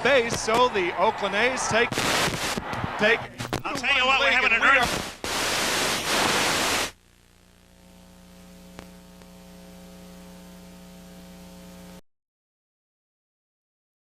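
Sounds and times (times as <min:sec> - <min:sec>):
loud static burst: 0:00.0 - 0:12.0
steady electrical hum: 0:00.0 - 0:12.0
click: 0:08.7 - 0:09.3.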